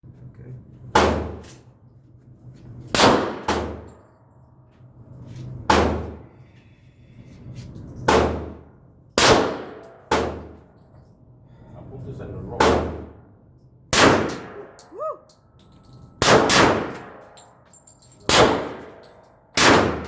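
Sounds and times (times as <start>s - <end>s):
loud pistol shots: 1.0s - 1.4s, 3.0s - 3.9s, 5.7s - 6.2s, 8.1s - 8.6s, 9.2s - 10.5s, 12.6s - 13.2s, 13.9s - 14.7s, 16.2s - 17.2s, 18.3s - 19.0s, 19.6s - 20.0s
quieter gunshots: 1.0s - 1.5s, 2.9s - 3.9s, 9.2s - 10.5s, 12.6s - 13.2s, 13.9s - 14.7s, 16.2s - 17.2s, 18.3s - 19.0s, 19.6s - 20.0s.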